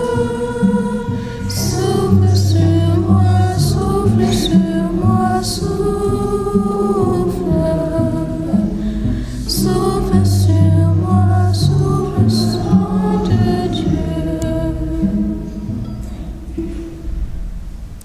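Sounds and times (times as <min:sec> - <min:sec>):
group singing worship song: 0:00.0 - 0:15.9
sustained low instrumental notes: 0:00.0 - 0:18.0.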